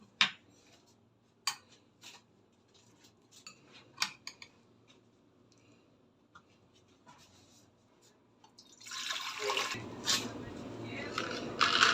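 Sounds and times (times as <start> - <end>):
utensils clinking against dishes: 9.8 - 11.9.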